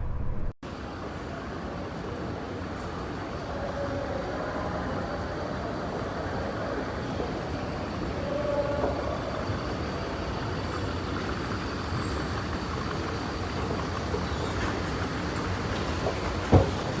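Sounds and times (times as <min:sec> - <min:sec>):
vehicle rumble: 0:00.0 - 0:00.6.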